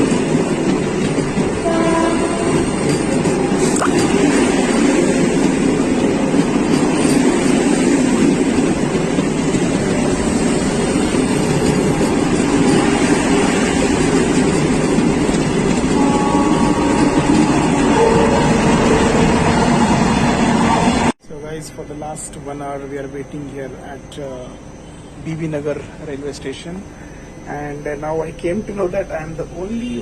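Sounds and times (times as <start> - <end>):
train passing with rushing rumble: 0.0 - 30.0.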